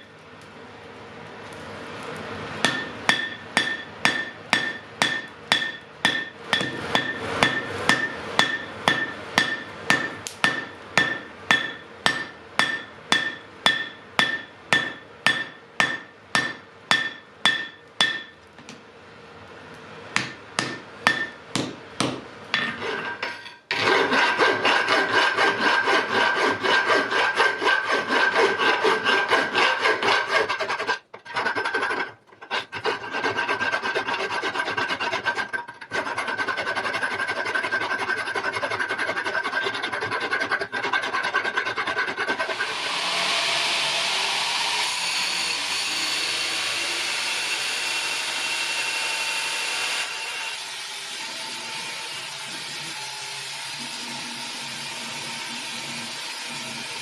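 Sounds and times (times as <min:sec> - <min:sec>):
hammer ringing on anvil: 0:02.6 - 0:18.4, 0:20.2 - 0:22.8
rasping scrape on metal: 0:22.6 - 0:42.8.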